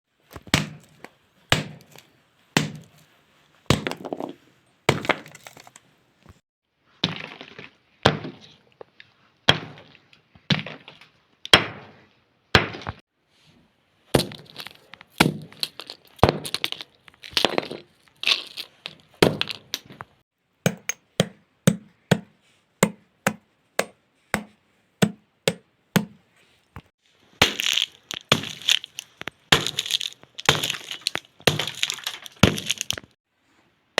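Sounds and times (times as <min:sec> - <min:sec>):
hammer smashing something brittle: 0:14.2 - 0:19.8, 0:27.3 - 0:33.2
dense crunching: 0:14.2 - 0:20.2, 0:27.1 - 0:33.2.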